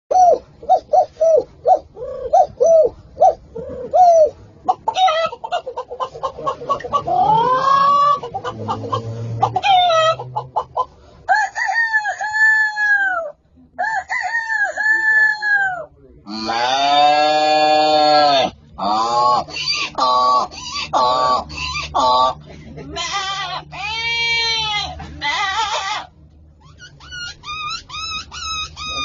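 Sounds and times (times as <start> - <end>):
chicken clucking: 0.3 - 13.2
rooster crowing: 11.3 - 15.9.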